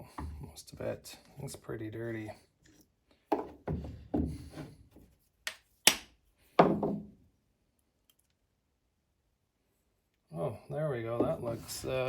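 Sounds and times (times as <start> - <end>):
tools knocking on a workbench: 6.6 - 7.1.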